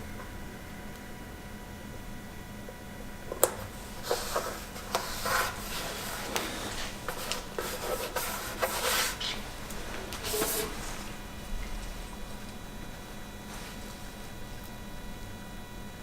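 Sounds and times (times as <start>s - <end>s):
sticker rubbing swishes: 3.5s - 14.4s.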